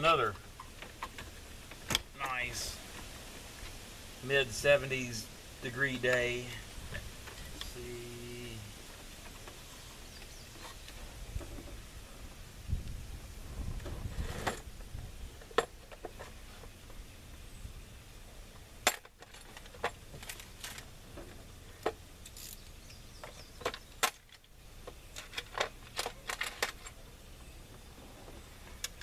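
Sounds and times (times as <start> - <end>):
clinks of hand tools and metal parts: 18.8 - 27.0.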